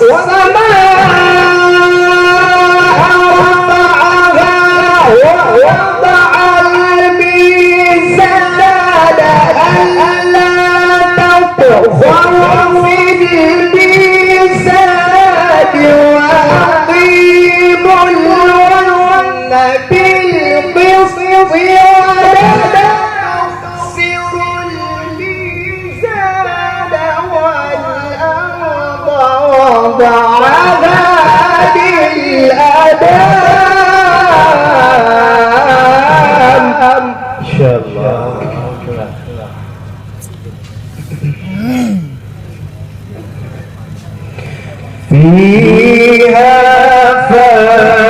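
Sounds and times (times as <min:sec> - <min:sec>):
person reciting melodically: 0:00.0 - 0:48.0.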